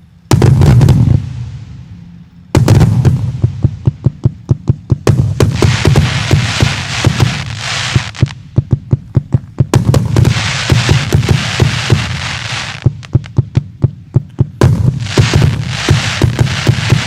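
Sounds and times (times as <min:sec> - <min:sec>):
firework crackling hiss: 0:00.0 - 0:03.8, 0:05.1 - 0:08.4, 0:09.8 - 0:13.3, 0:14.6 - 0:17.0
firework launch shots: 0:00.0 - 0:04.0, 0:05.0 - 0:08.4, 0:09.7 - 0:13.2, 0:14.6 - 0:17.0.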